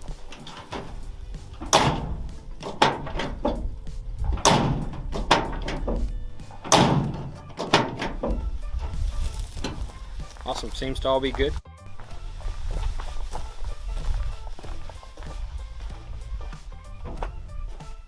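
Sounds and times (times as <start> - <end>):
tailgate slamming shut: 0.3 - 8.8.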